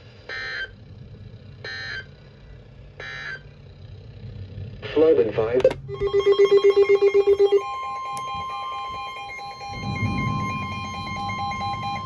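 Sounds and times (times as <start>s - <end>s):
low rumble: 0.0s - 8.6s, 9.4s - 12.0s
rapidly pulsing electronic tone: 0.0s - 12.0s
steady high alarm tone: 5.9s - 12.0s.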